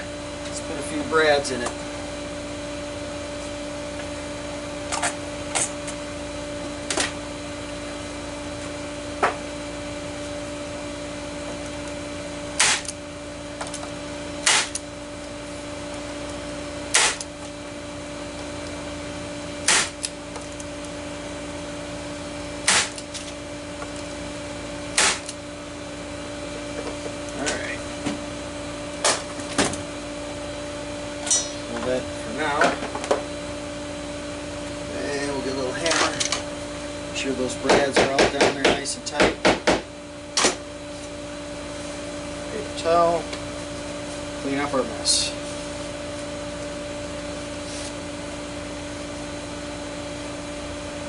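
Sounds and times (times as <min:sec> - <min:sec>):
nail gun shots into wood: 0:12.6 - 0:12.9, 0:14.4 - 0:14.8, 0:16.9 - 0:17.3, 0:19.6 - 0:20.0, 0:22.6 - 0:23.0, 0:25.0 - 0:25.3.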